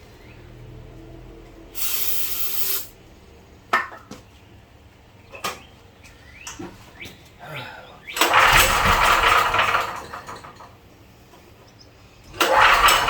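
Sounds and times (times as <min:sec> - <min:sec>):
aerosol spray hissing: 0:01.8 - 0:02.9.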